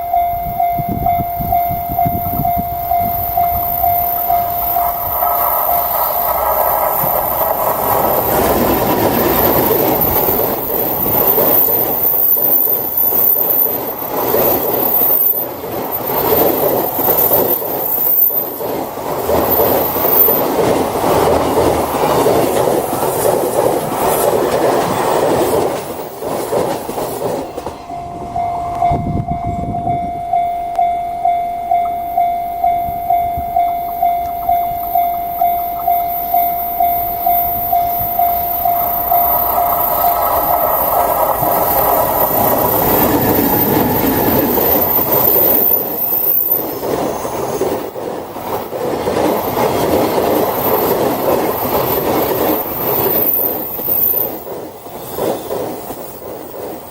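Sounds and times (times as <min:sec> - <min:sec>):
level crossing bell ringing: 0:00.0 - 0:10.7, 0:27.8 - 0:46.0
freight train passing: 0:00.0 - 0:56.9
wheels clattering over rails: 0:03.2 - 0:29.2, 0:34.2 - 0:56.9.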